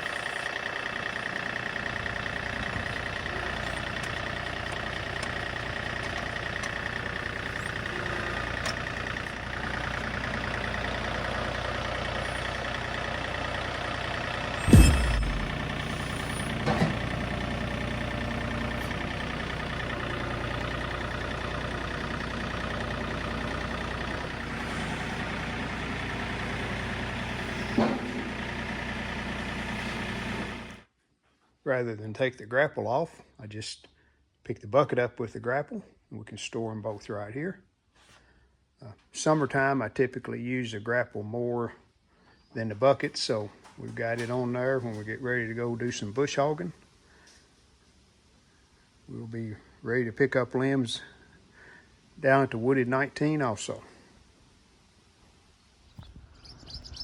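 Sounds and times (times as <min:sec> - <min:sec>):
tractor diesel engine running: 0:00.0 - 0:30.9, 0:56.0 - 0:57.0
loud clunk: 0:14.6 - 0:17.2
front loader knocks: 0:14.6 - 0:17.4.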